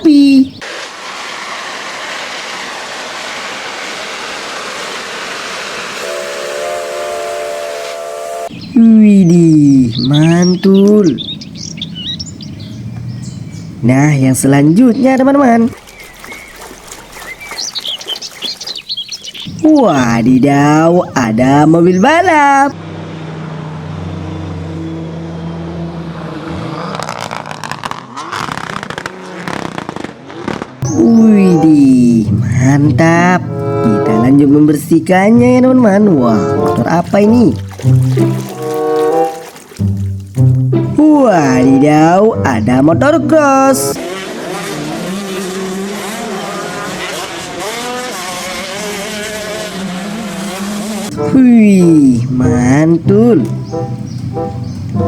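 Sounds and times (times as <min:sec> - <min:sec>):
train rushing noise: 0:00.6 - 0:08.7
train horn chord: 0:06.0 - 0:08.6, 0:33.4 - 0:34.4, 0:36.1 - 0:36.9, 0:37.6 - 0:41.0, 0:53.4 - 0:55.0
race car engine revving: 0:22.4 - 0:31.3, 0:42.5 - 0:51.4.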